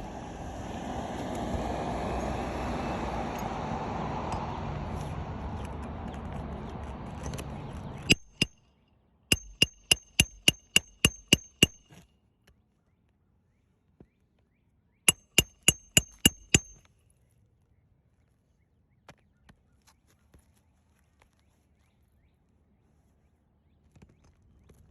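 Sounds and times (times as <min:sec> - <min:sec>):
hammer driving roofing nails: 0:07.1 - 0:08.6, 0:09.3 - 0:12.0, 0:15.1 - 0:16.8.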